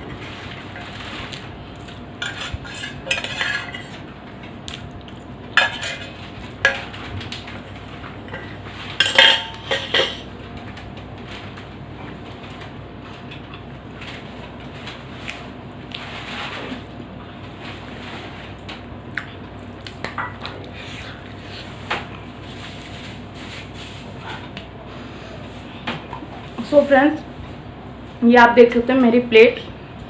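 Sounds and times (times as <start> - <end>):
cutlery clinking on a plate: 9.0 - 10.2.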